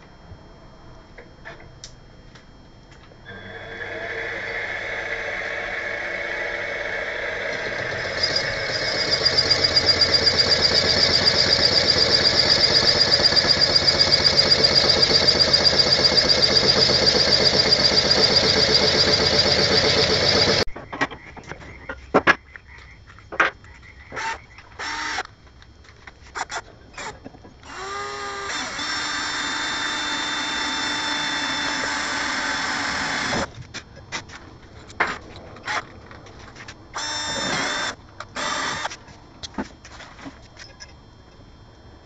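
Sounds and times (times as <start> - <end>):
milling machine motor running: 3.3 - 20.7, 24.2 - 25.3, 26.4 - 33.5, 37.0 - 38.9.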